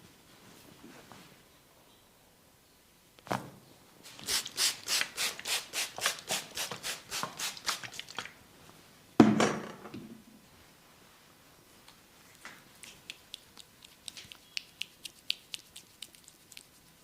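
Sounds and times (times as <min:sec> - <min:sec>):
hands rubbing in massage: 0:12.7 - 0:17.0.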